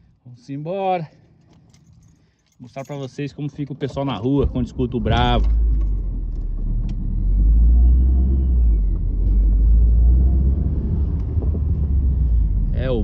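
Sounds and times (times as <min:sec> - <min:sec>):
deep bass from car sound system: 0:04.2 - 0:13.0.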